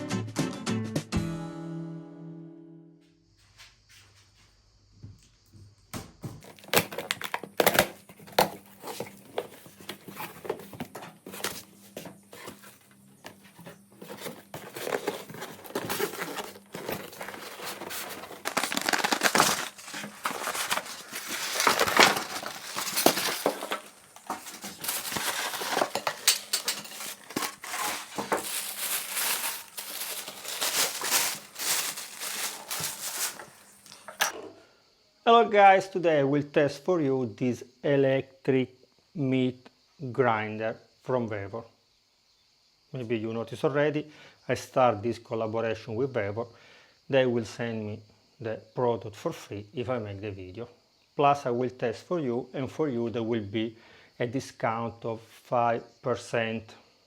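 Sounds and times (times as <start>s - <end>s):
packaging crinkling and tearing: 6.4s - 9.5s, 14.0s - 34.3s.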